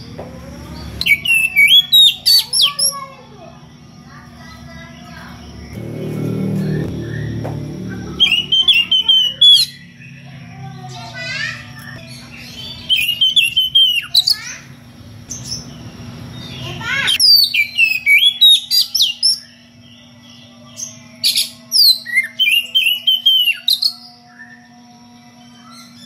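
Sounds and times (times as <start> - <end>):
steady low hum: 0.0 - 26.0
bird singing whistles and chirps: 1.0 - 3.2, 5.0 - 10.3, 11.8 - 14.5, 16.4 - 26.0.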